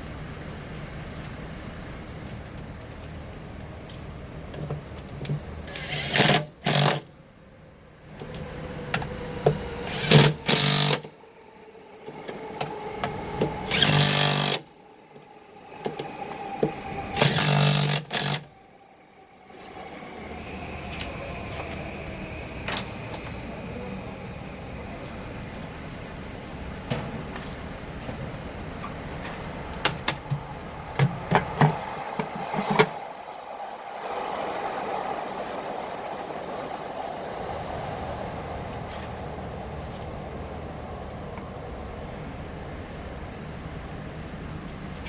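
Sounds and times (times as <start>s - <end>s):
motor-driven tool bursts: 5.7s - 7.0s, 9.9s - 11.0s, 13.7s - 14.6s, 17.2s - 18.4s
steady background sound: 27.6s - 43.7s.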